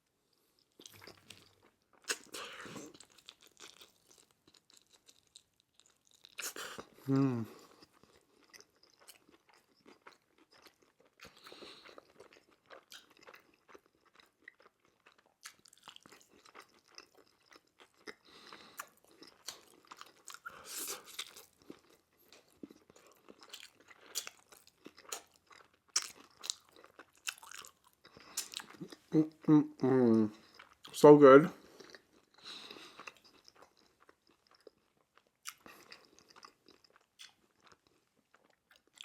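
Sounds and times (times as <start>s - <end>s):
crunchy chewing: 0.6s - 7.0s, 7.6s - 29.0s.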